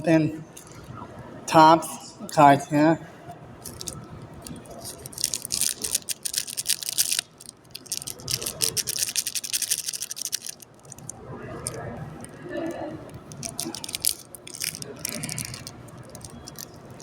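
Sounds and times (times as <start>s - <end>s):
plastic wrapper crinkling and tearing: 3.6s - 17.0s.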